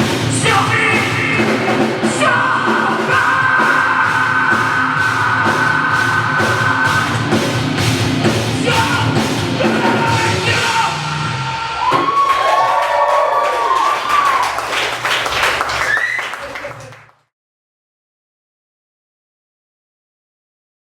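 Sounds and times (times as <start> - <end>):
live rock band playing: 0.0 - 11.8
person yelling vocals: 8.6 - 11.9.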